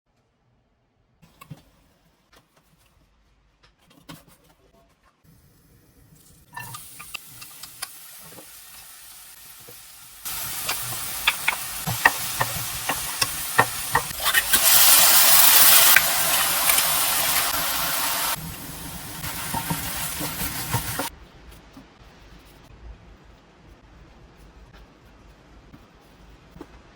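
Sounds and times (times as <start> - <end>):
food sizzling in a frying pan: 6.2 - 21.1
spatula clicking against pan: 10.6 - 14.2.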